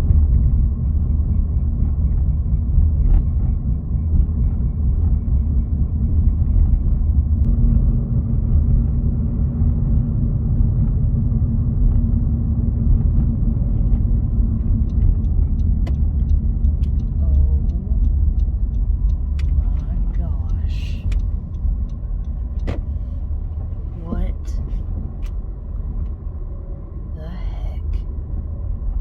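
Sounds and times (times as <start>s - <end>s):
car road and engine rumble: 0.0s - 29.0s
light regular ticking: 14.4s - 26.2s.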